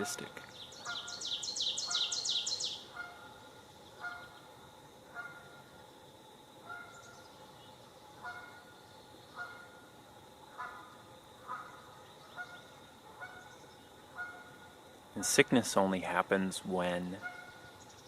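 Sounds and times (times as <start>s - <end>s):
faint high insect drone: 0.0s - 18.0s
bird trilling high chirps: 0.5s - 3.1s
goose honking: 2.9s - 3.3s, 4.0s - 4.4s, 5.1s - 5.6s, 6.6s - 7.1s, 8.2s - 8.7s, 9.4s - 9.8s, 10.5s - 14.6s, 17.2s - 17.7s.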